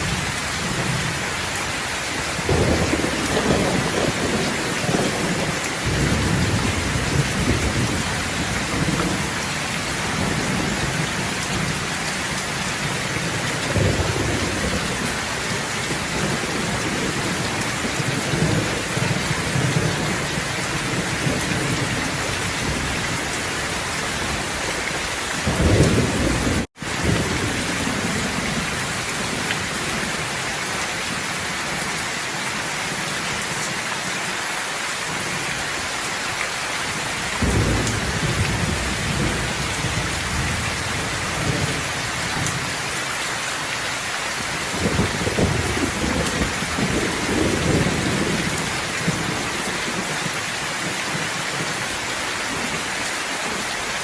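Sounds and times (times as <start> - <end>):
heavy rain hissing: 0.0 - 54.0
thunder rolling: 2.4 - 11.8, 13.2 - 24.4, 37.4 - 42.7, 44.7 - 49.4.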